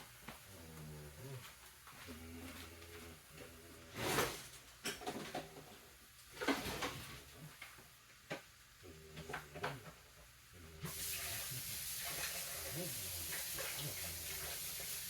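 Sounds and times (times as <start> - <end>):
kitchen clattering and scraping: 4.0 - 5.6, 6.3 - 7.2.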